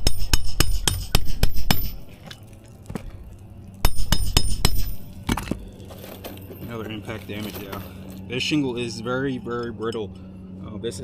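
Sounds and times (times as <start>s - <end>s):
metal-on-metal clinking strikes: 0.0s - 2.1s, 3.8s - 8.5s.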